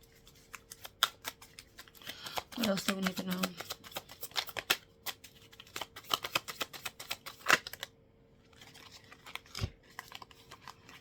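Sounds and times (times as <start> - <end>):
cards being shuffled: 0.1 - 7.9, 8.5 - 11.0.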